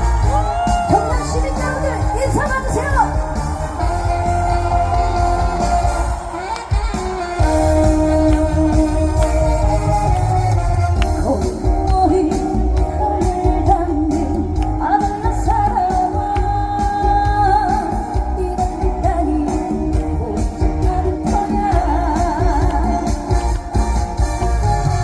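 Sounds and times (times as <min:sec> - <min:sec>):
woman singing with vibrato: 0:00.0 - 0:10.1, 0:11.0 - 0:23.6
amplified band playing: 0:00.0 - 0:25.0.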